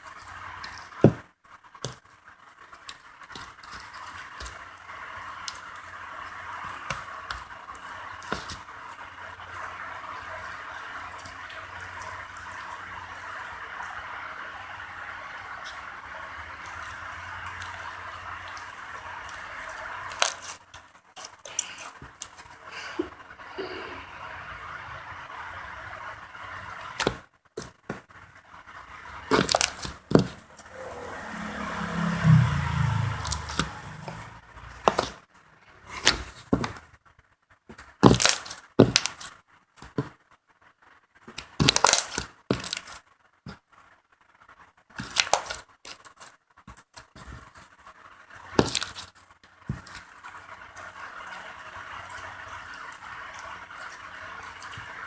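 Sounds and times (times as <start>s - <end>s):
slime crackling and tearing: 29.3s - 30.3s, 38.0s - 39.3s, 41.4s - 43.0s, 45.0s - 46.2s, 48.6s - 49.1s
low hum: 30.0s - 34.9s.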